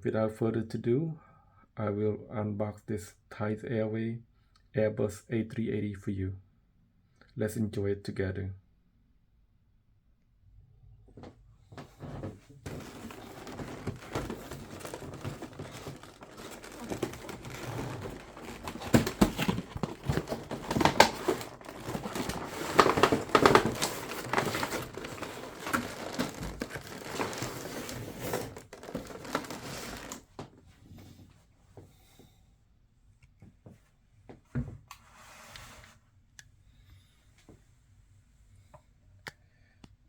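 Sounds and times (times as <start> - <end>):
packaging crinkling and rustling: 11.8 - 30.5.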